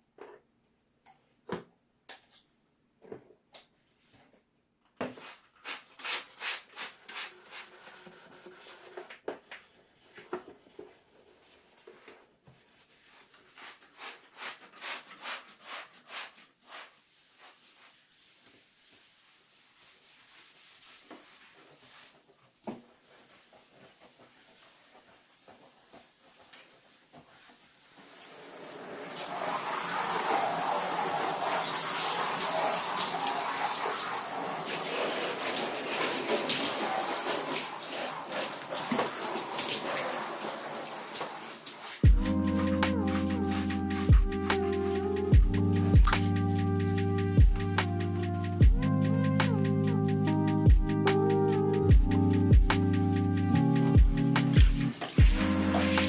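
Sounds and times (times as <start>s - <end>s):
hand scrubbing a surface: 5.2s - 47.0s, 52.7s - 56.0s
tap water running: 25.5s - 45.0s, 53.8s - 56.0s.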